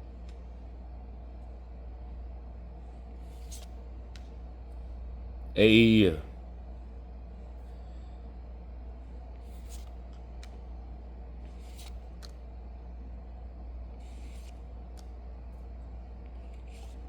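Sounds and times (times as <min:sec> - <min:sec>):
steady low hum: 0:00.0 - 0:17.0
cards sliding against cards: 0:03.2 - 0:04.2, 0:09.4 - 0:10.6, 0:11.4 - 0:12.4, 0:14.0 - 0:15.1, 0:16.4 - 0:17.0.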